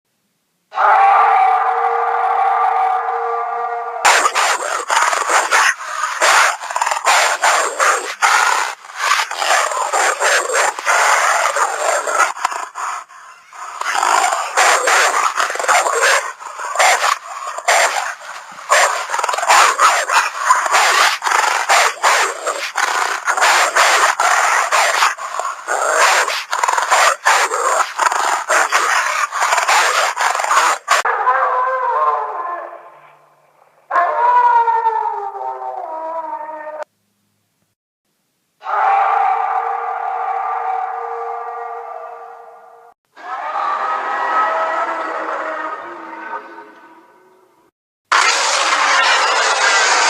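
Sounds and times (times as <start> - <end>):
wolf howling cry: 0.7 - 33.1, 33.9 - 36.9, 38.6 - 50.0
rasping snarls and growls: 4.0 - 31.2.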